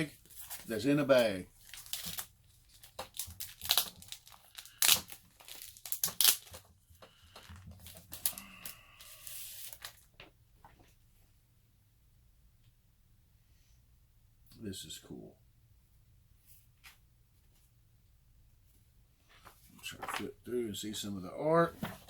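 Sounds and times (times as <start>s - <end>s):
plastic bags crinkling: 0.1s - 10.0s.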